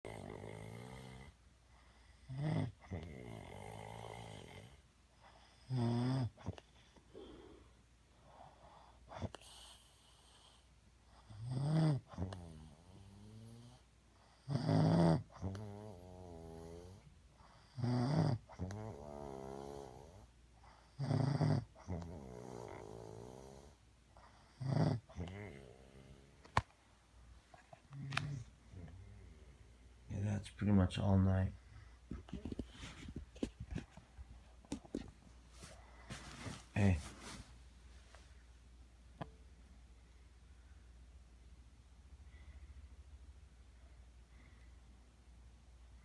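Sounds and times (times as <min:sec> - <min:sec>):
man snoring with rasp: 0:00.0 - 0:01.4, 0:02.3 - 0:04.8, 0:05.7 - 0:06.3, 0:14.5 - 0:17.1, 0:17.8 - 0:20.3, 0:21.0 - 0:23.8, 0:24.6 - 0:26.2.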